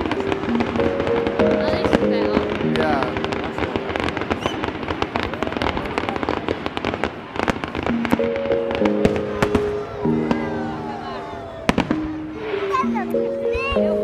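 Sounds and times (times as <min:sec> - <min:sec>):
music with held synth notes: 0:00.0 - 0:05.0, 0:07.8 - 0:14.0
fireworks banging and crackling: 0:00.0 - 0:14.0.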